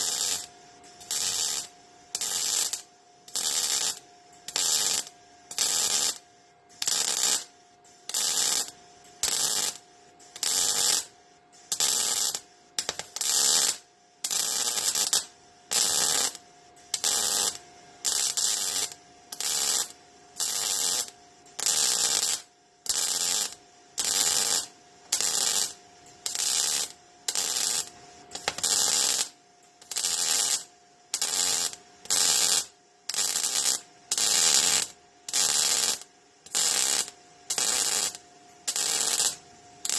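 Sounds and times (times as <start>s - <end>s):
welding arc crackling: 0.0s - 6.2s, 6.8s - 7.5s, 8.1s - 9.8s, 10.4s - 11.1s, 11.7s - 39.9s
faint steady hum: 0.0s - 39.9s.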